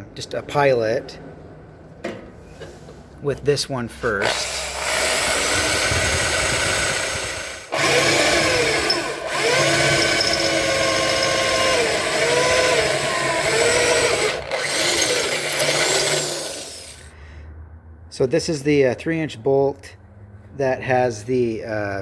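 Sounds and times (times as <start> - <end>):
electric drill drilling into metal: 4.2 - 17.1.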